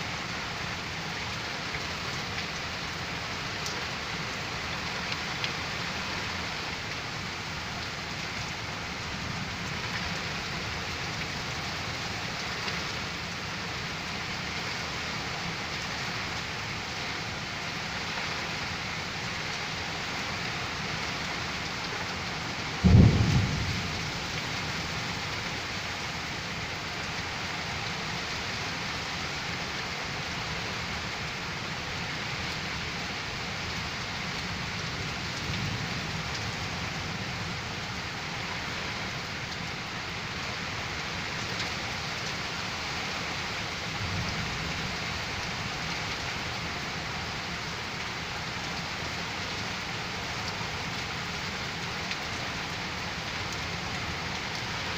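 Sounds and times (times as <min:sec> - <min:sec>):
steady rain: 0:00.0 - 0:54.9
loud thunder clap: 0:22.8 - 0:24.2
low thunder rumbles: 0:22.8 - 0:25.4.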